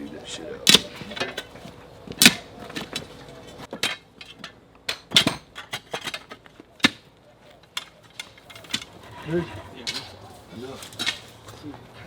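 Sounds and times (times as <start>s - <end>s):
metal digging tool striking ground: 0.7s - 3.1s, 3.7s - 7.1s.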